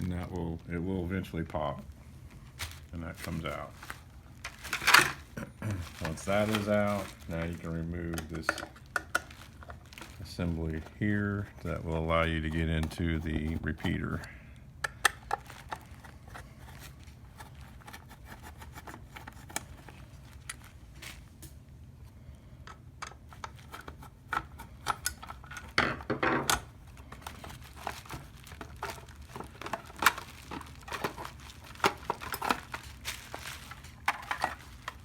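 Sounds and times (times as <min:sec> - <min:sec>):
plastic rustling and scraping: 0:00.0 - 0:14.3, 0:15.2 - 0:21.6, 0:23.1 - 0:35.0
plastic parts clicking and tapping: 0:06.0 - 0:10.2, 0:11.9 - 0:19.8, 0:22.6 - 0:35.0.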